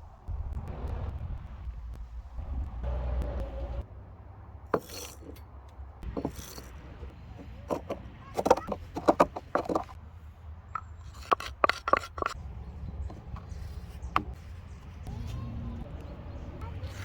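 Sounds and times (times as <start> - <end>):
low steady rumble: 0.0 - 4.7
knocks clinks and scrapes of handling: 4.7 - 10.0, 10.7 - 12.4.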